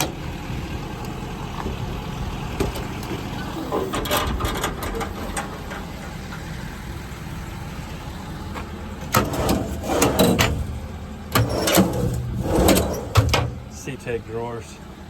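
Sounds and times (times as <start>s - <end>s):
clunks and rattles: 0.0s - 0.2s, 1.0s - 7.0s, 8.4s - 13.8s
truck engine idling: 0.0s - 15.0s.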